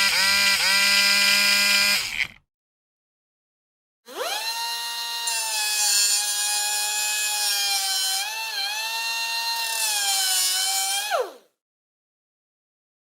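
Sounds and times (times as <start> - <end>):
power drill motor whining: 0.0 - 2.4.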